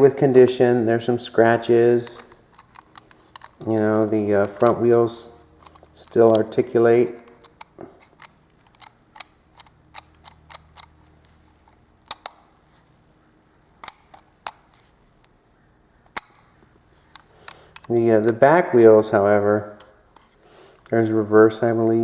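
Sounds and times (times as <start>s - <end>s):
toy car clicks and taps: 2.1s - 4.8s, 7.2s - 10.9s.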